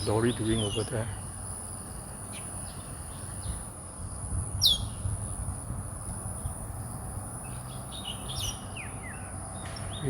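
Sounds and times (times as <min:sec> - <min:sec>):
bird chirping: 0:00.0 - 0:01.2, 0:04.6 - 0:05.1, 0:07.4 - 0:10.0.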